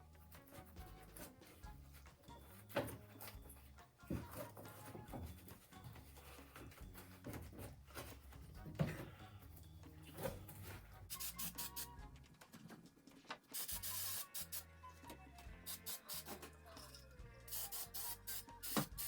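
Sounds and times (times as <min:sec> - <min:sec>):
carpet rubbing and scraping: 0:00.0 - 0:11.2
background music with bass line: 0:00.0 - 0:12.3, 0:13.8 - 0:19.0.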